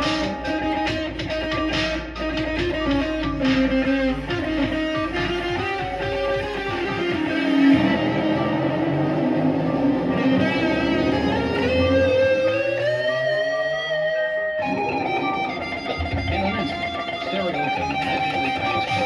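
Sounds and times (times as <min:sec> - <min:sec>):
deep bass: 0:00.0 - 0:13.4
electric guitar melody: 0:00.0 - 0:19.0.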